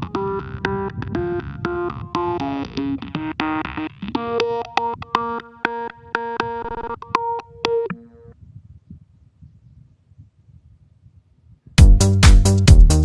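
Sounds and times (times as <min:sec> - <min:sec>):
synthesizer melody: 0:00.0 - 0:08.2.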